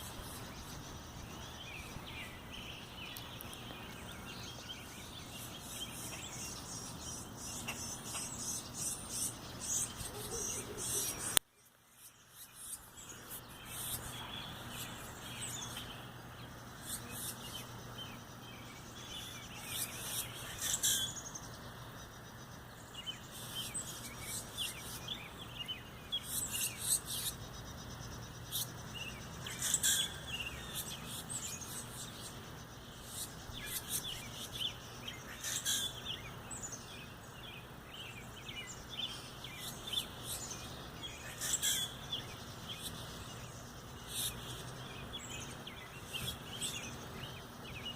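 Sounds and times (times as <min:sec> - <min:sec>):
small birds chirping: 0:00.0 - 0:47.9
steady low hum: 0:00.0 - 0:47.9.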